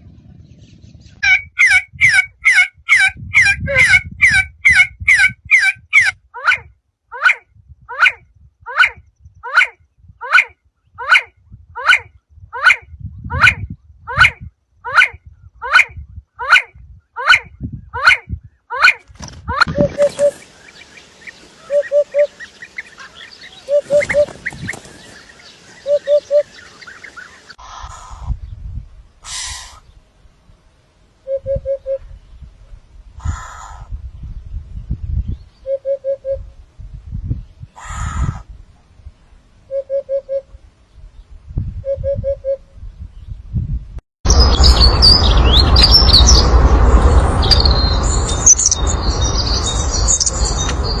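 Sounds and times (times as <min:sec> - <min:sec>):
bird honking calls: 0:01.2 - 0:06.6, 0:19.7 - 0:27.6
small birds chirping: 0:18.0 - 0:30.1, 0:44.3 - 0:51.0
rustling noise: 0:19.0 - 0:21.7, 0:23.8 - 0:25.9
steady low rumble: 0:36.4 - 0:39.7, 0:42.7 - 0:51.0.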